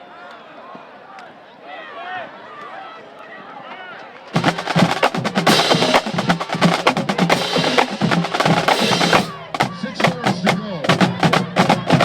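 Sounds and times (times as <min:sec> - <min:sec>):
percussion-heavy music: 0:04.4 - 0:12.0.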